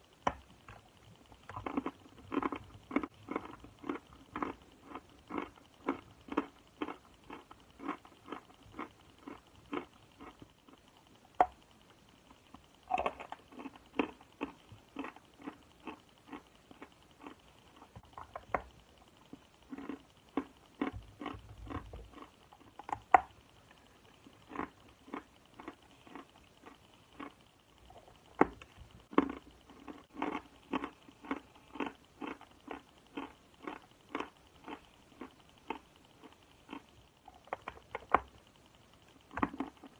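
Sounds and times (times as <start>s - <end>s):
chewing crunchy chalk: 1.5s - 11.0s, 24.2s - 27.4s, 28.4s - 38.1s.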